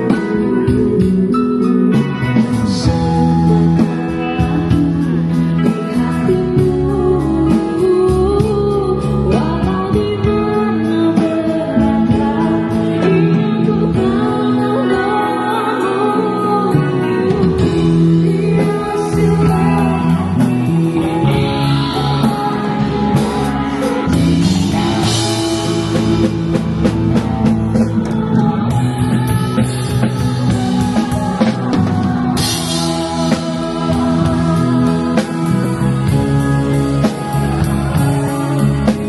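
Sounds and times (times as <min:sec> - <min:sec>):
live rock band playing: 0:00.0 - 0:39.0
person singing: 0:00.0 - 0:39.0.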